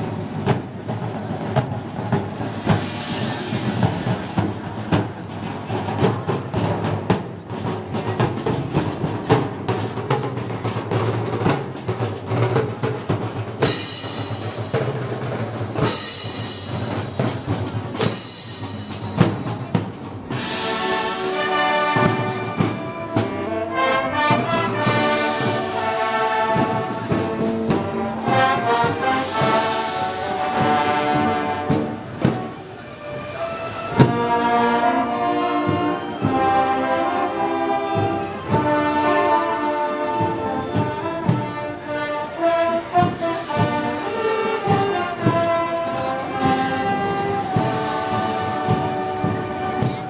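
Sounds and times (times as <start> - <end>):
drum and cymbal strokes: 0.0 - 50.0
brass playing melody: 20.2 - 50.0.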